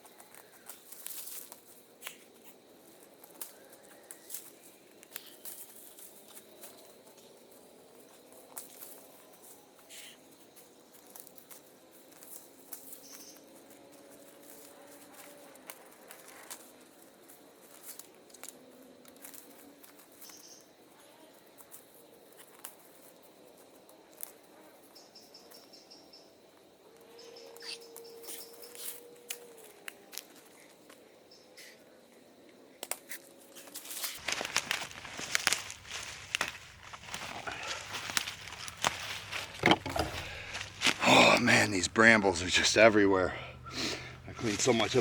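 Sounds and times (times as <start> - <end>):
small clicks and rustles: 0.0 - 9.6, 10.5 - 24.4, 32.8 - 41.0
bird chirps and trill: 27.2 - 28.8.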